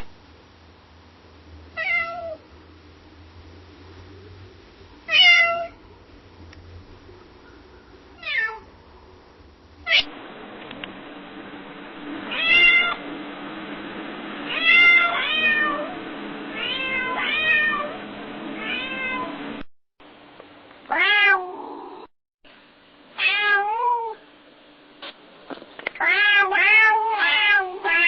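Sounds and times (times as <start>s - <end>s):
faint steady hum: 0.0s - 28.0s
cat meowing: 1.8s - 2.4s, 5.1s - 5.8s, 8.2s - 8.6s, 16.6s - 18.0s, 18.6s - 19.3s, 20.9s - 22.1s, 23.2s - 24.2s, 26.0s - 28.0s.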